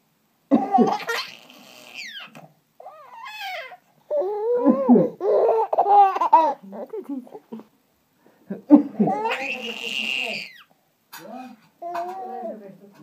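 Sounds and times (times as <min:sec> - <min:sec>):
baby squealing: 0:00.9 - 0:06.6, 0:09.1 - 0:10.7.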